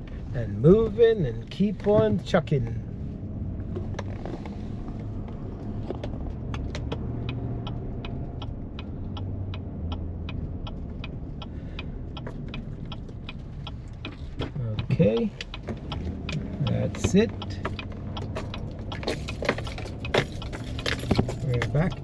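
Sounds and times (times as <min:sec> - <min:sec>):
car engine and road rumble: 0:00.0 - 0:22.0
sharp clicks and rattles: 0:05.2 - 0:22.0.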